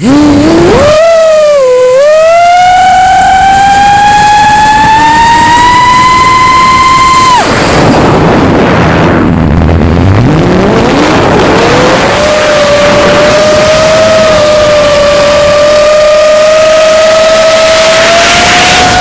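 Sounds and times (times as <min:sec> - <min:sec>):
quadcopter motors whining: 0:00.0 - 0:07.8, 0:11.5 - 0:19.0
rushing air noise: 0:02.8 - 0:16.0.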